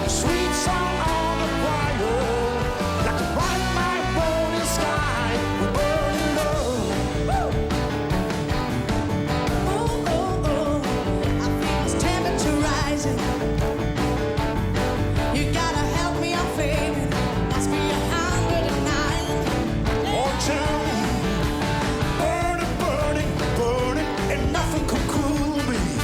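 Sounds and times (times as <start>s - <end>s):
rock and roll song with singing: 0.0s - 26.0s.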